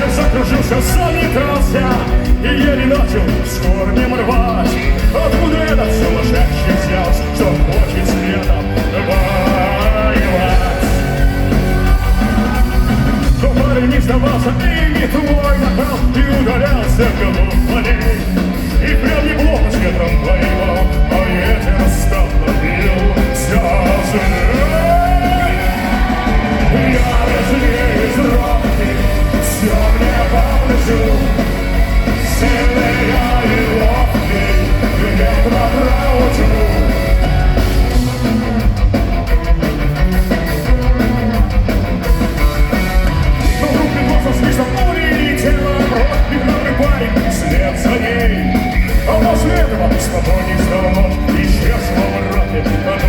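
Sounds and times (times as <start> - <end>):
person singing and shouting: 0.0 - 37.8
punk rock band playing: 0.0 - 53.0.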